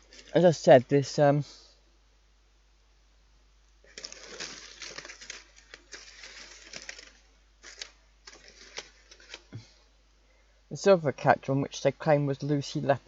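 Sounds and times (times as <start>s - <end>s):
wrapper crinkling and rustling: 0.0s - 0.7s, 3.8s - 9.6s.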